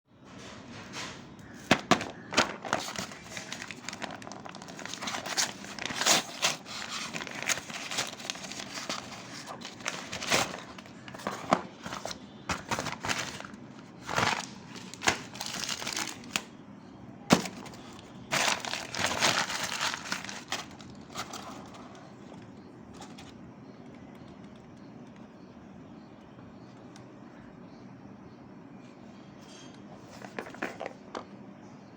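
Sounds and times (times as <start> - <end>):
plastic and cardboard crinkling: 1.5 - 16.5, 17.3 - 23.4, 30.1 - 31.0.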